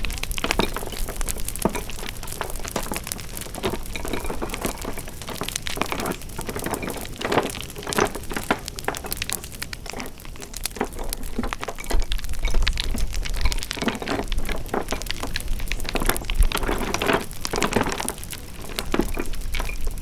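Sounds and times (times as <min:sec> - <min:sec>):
wood fire crackling: 0:00.0 - 0:20.0.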